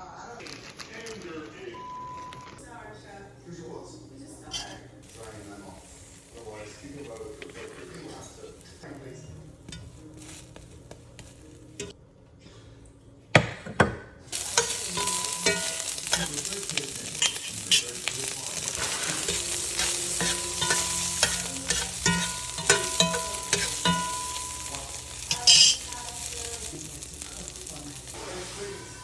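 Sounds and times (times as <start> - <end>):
food sizzling in a pan: 4.6 - 11.9, 14.3 - 29.0
utensil clinking against pan: 14.3 - 29.0.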